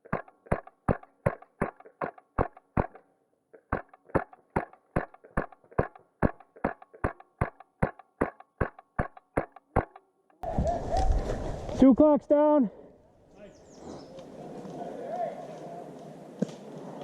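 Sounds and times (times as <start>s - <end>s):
airsoft rifle shots: 3.7s - 10.0s.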